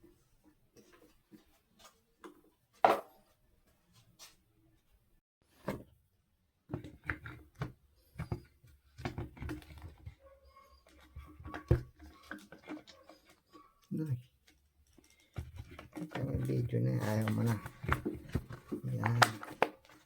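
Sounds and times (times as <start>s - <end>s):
parts clicking and knocking: 10.9s - 20.0s.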